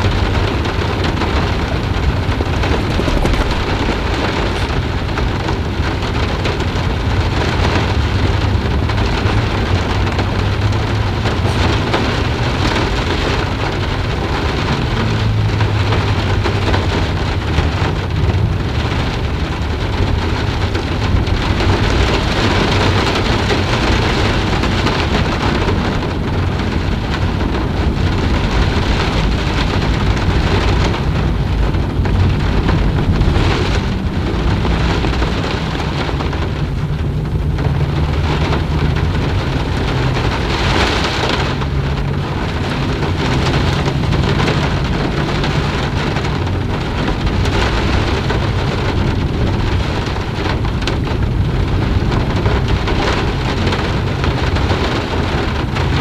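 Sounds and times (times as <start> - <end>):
rain falling: 0.0 - 56.0
low rumble: 2.3 - 5.0.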